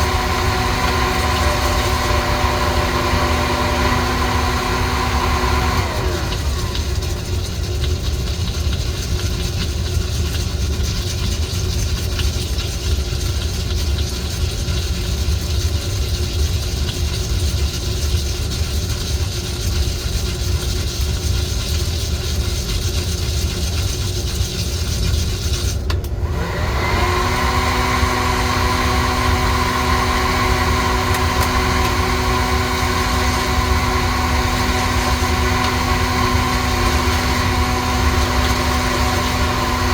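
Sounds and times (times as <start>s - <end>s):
motor spinning up with whine: 0.0s - 7.7s, 26.1s - 39.9s
coffee roaster rumbling with hiss: 0.0s - 39.9s.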